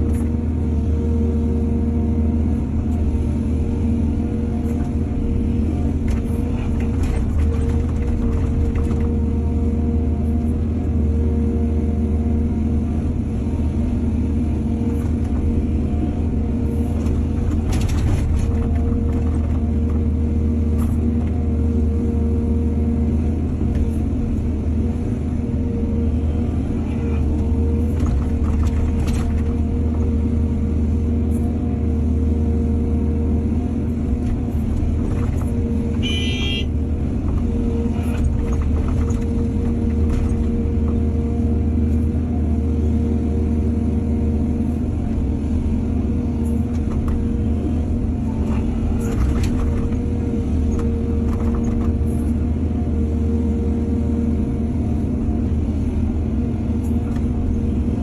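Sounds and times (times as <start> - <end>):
excavator diesel engine running: 0.0 - 58.0.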